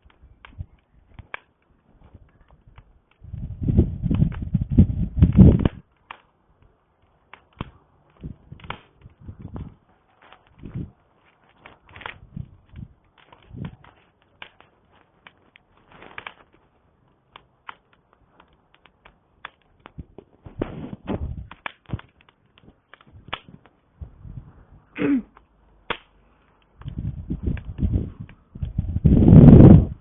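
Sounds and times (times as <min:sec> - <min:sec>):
campfire wood crackling: 0:00.0 - 0:30.0
low rumbling gusts: 0:02.1 - 0:05.8, 0:08.2 - 0:09.8, 0:10.5 - 0:11.0, 0:12.1 - 0:13.9, 0:20.0 - 0:21.6, 0:23.1 - 0:25.0, 0:26.8 - 0:30.0.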